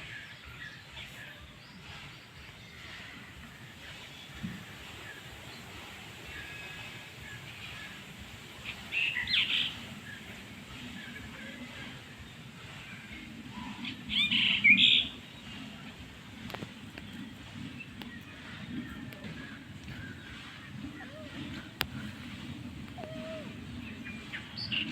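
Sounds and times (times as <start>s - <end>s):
kitten mewing: 22.9s - 23.6s.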